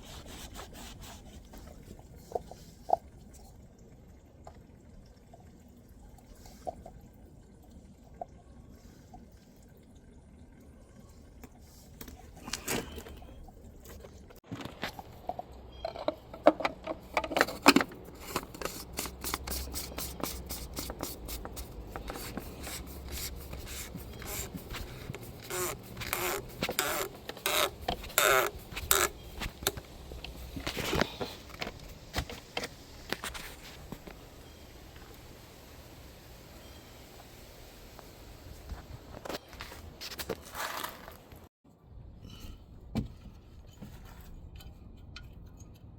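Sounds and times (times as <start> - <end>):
tools clicking and scraping: 15.8 - 33.4.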